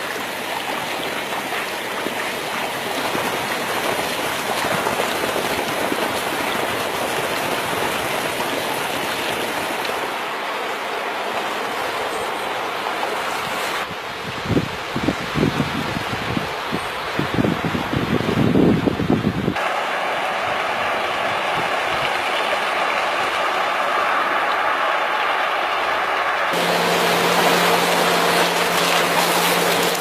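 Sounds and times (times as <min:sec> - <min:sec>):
water rushing: 0:00.0 - 0:30.0
wind buffeting microphone: 0:13.3 - 0:19.6.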